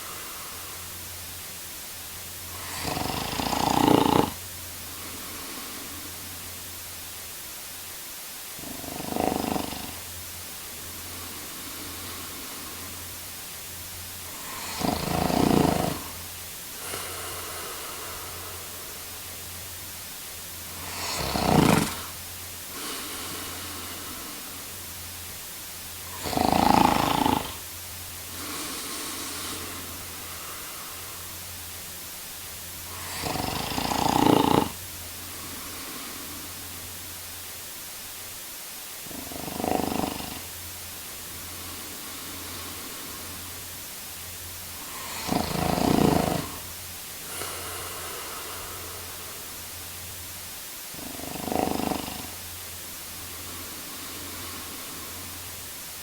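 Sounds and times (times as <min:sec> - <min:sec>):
man snoring: 0:00.0 - 0:01.0, 0:02.4 - 0:06.3, 0:08.6 - 0:10.2, 0:10.8 - 0:13.2, 0:14.2 - 0:19.4, 0:20.6 - 0:24.8, 0:26.0 - 0:31.4, 0:32.8 - 0:36.8, 0:39.0 - 0:40.6, 0:41.4 - 0:43.7, 0:44.8 - 0:49.7, 0:50.9 - 0:52.5, 0:53.1 - 0:55.5
soft breaths: 0:00.0 - 0:56.0
steady background hiss: 0:00.0 - 0:56.0.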